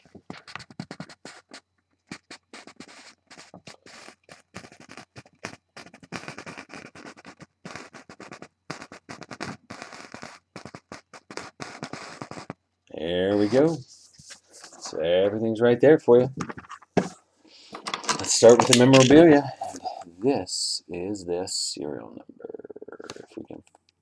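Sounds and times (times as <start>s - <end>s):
scratching and rustling: 0.0s - 12.6s, 13.3s - 15.0s, 16.3s - 20.1s.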